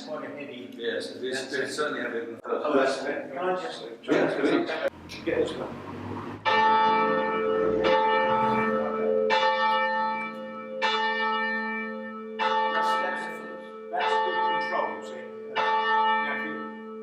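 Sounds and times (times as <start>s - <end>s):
church bell chiming: 6.4s - 17.0s.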